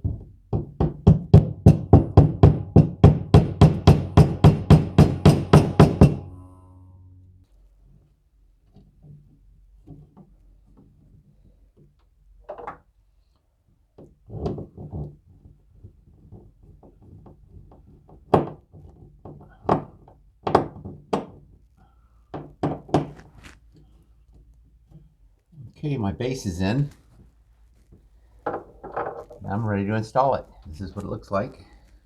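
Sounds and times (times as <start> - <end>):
sharp knocks and thuds: 0.0 - 6.2.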